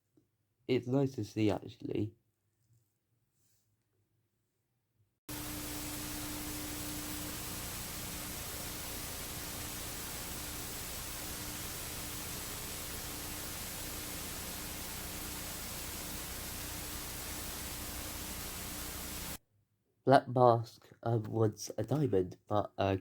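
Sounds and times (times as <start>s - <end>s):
background hiss: 5.3s - 19.4s
faint hum: 5.3s - 19.4s.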